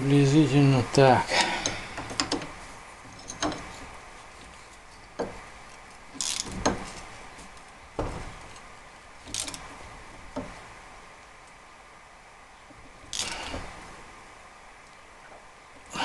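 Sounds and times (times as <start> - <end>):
ratcheting rasps: 1.3 - 7.0, 8.0 - 9.8, 12.8 - 13.8
ratchet wrench clicks and knocks: 9.3 - 9.6.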